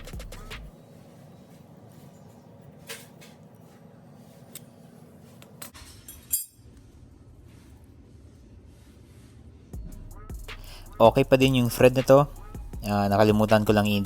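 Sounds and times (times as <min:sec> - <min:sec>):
background music: 0:00.0 - 0:00.7, 0:09.8 - 0:14.0.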